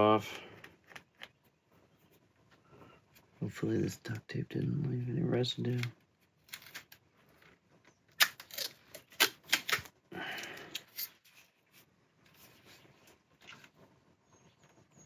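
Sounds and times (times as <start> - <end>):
tape clicks and crackles: 0.5 - 1.6, 5.6 - 11.5
tape tearing: 5.7 - 7.4, 8.1 - 11.5
rustling: 10.5 - 15.0.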